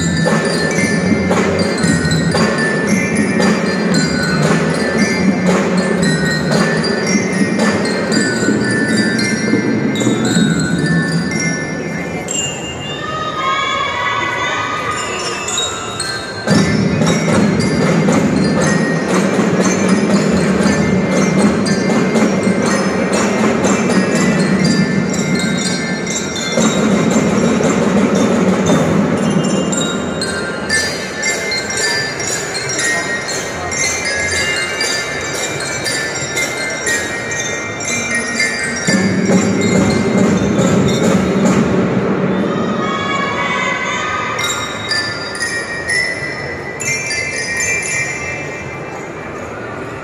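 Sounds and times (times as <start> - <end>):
marching band playing: 0.0 - 11.6, 16.4 - 31.0, 37.3 - 42.7
drum strokes: 0.0 - 12.2, 16.0 - 43.4
mallet bells melody: 0.0 - 13.4, 14.7 - 50.0.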